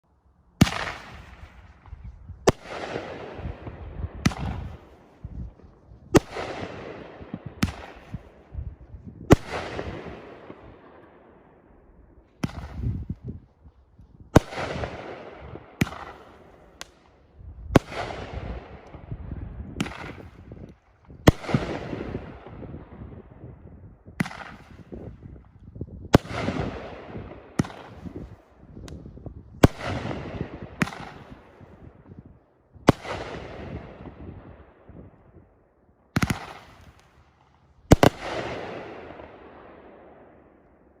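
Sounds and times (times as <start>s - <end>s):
firework bangs: 0.6s - 8.6s, 12.4s - 13.2s, 14.4s - 17.0s, 17.8s - 22.9s, 26.1s - 28.4s, 29.6s - 31.7s, 36.2s - 37.1s, 37.9s - 40.0s.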